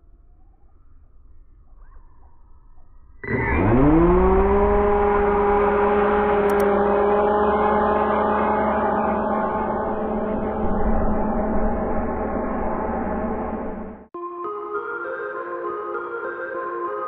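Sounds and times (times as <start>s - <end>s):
model airboat motor and propeller: 3.2s - 13.4s.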